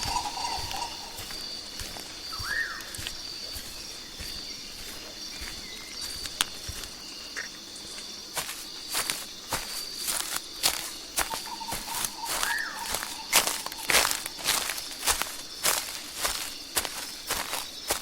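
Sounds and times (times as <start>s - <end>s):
bird call: 0.0s - 1.6s, 2.3s - 3.0s, 11.3s - 14.4s
insects buzzing: 0.0s - 18.0s.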